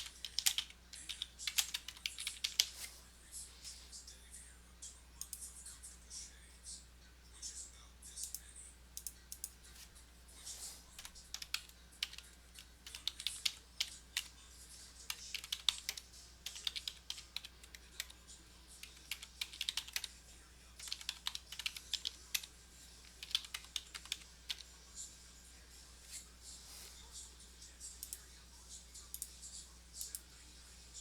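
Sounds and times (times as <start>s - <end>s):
typing on keyboard: 0.0s - 2.7s, 11.0s - 14.3s, 15.1s - 18.2s, 18.8s - 20.1s, 20.8s - 22.5s, 23.1s - 24.7s
low electrical hum: 0.0s - 31.0s.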